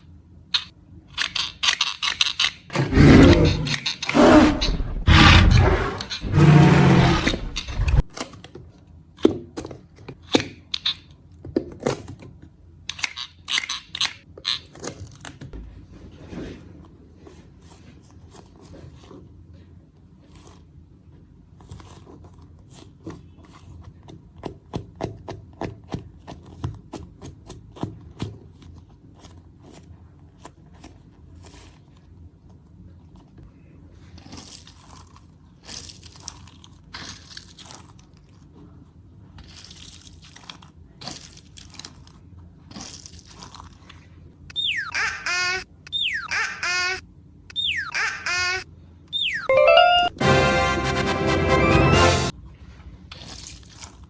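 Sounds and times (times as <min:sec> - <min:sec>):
slime crunchy clicks and crackles: 0:34.2 - 0:38.5, 0:39.4 - 0:44.1.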